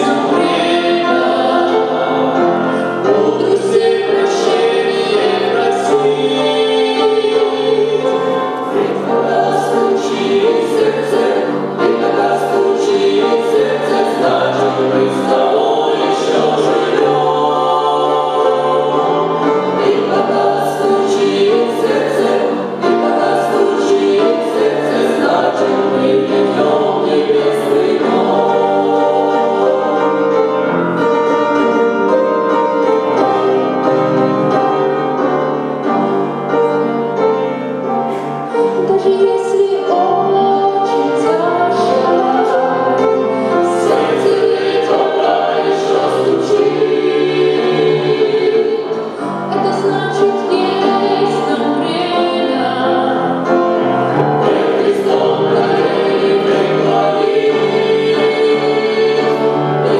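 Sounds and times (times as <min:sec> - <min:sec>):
church choir singing: 0:00.0 - 0:59.9.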